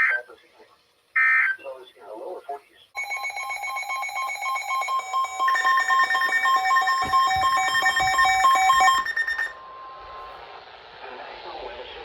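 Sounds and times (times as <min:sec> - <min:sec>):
faint radio static hiss: 0:00.0 - 0:02.9
two-tone warbling alert alarm: 0:03.0 - 0:09.8.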